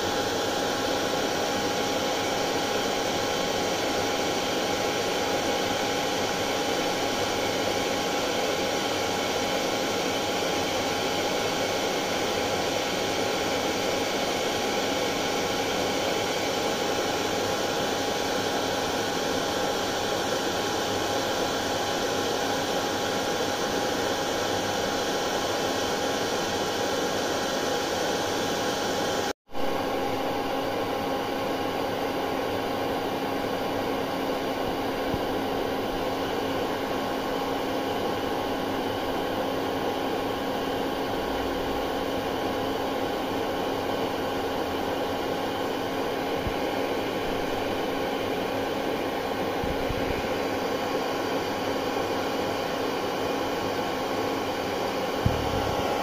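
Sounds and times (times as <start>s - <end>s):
hair dryer running: 0.0s - 56.0s.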